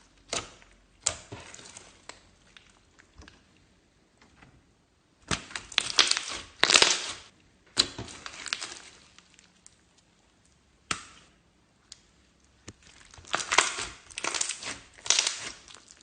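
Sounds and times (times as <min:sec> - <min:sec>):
slime crackling and popping: 0:05.2 - 0:11.3, 0:11.9 - 0:16.0.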